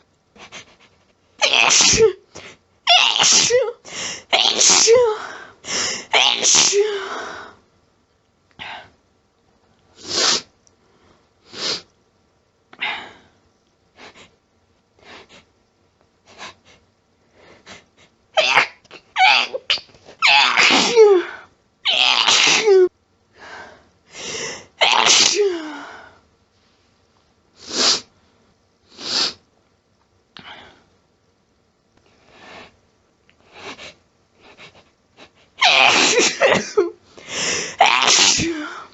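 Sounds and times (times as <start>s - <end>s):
person sneezing: 1.4s - 2.2s, 2.9s - 3.8s, 4.4s - 5.3s, 6.0s - 7.2s, 10.0s - 10.5s, 18.4s - 22.9s, 24.8s - 25.8s, 35.6s - 38.9s
catching breaths: 37.1s - 37.8s.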